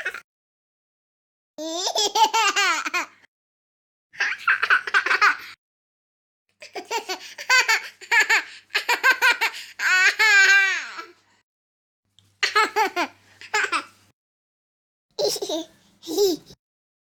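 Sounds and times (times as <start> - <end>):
baby giggling: 0.0 - 0.2, 4.2 - 5.6, 6.6 - 11.0, 12.4 - 13.9, 15.2 - 16.6
baby squealing laugh: 0.0 - 0.2.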